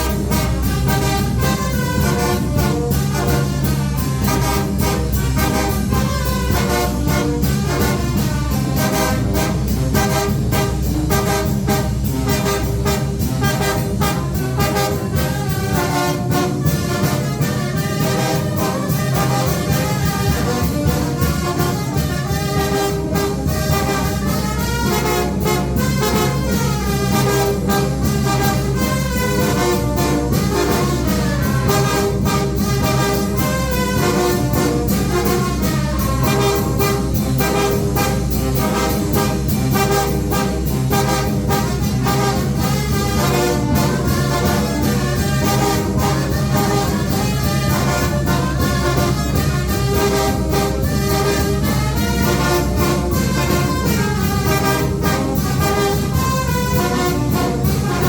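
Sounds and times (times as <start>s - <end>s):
steady drum beat: 0.0s - 58.0s
trumpets and trombones: 0.0s - 58.0s
wind band playing: 0.0s - 58.0s.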